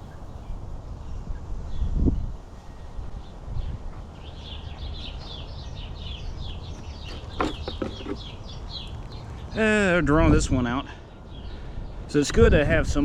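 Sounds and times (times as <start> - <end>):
wind rumble on microphone: 0.0 - 13.0
small bird chirping: 3.2 - 9.6.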